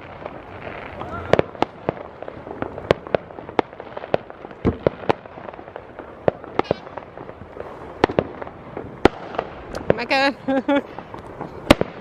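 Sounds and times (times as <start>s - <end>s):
distant fireworks: 0.0s - 12.0s
firework bangs and pops: 0.0s - 12.0s.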